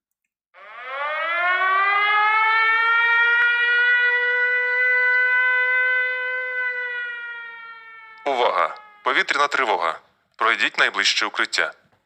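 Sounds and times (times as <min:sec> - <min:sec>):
air-raid siren wailing: 0:00.6 - 0:10.0.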